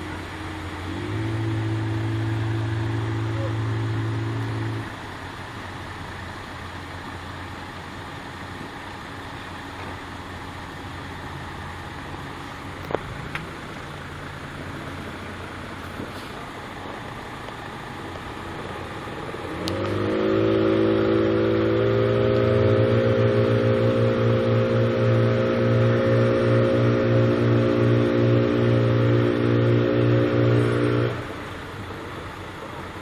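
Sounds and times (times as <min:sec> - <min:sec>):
diesel truck engine revving: 0:00.0 - 0:33.0.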